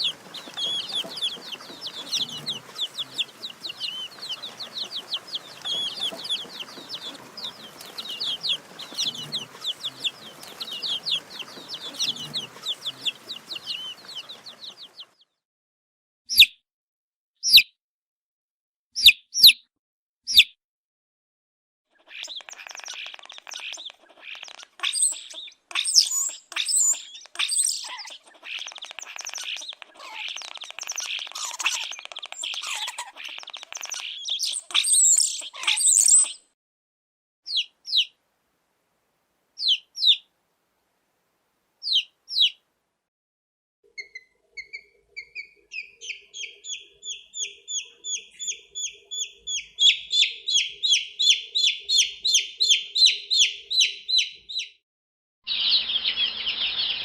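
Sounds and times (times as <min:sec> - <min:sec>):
chicks peeping: 0:00.0 - 0:15.3, 0:22.1 - 0:36.4, 0:37.5 - 0:38.1, 0:39.6 - 0:40.2, 0:41.8 - 0:42.6, 0:44.0 - 0:54.7, 0:55.5 - 0:57.0.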